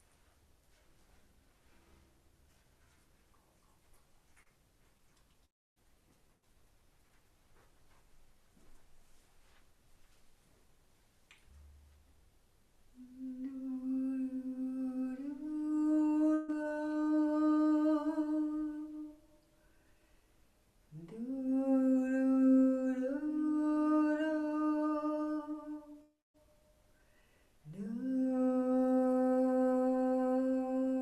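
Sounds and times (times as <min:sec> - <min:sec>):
woman humming: 0:13.0 - 0:19.2.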